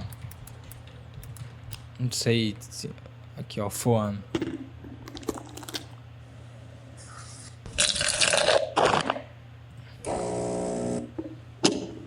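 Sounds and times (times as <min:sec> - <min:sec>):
buzzy tone: 0:10.0 - 0:11.1.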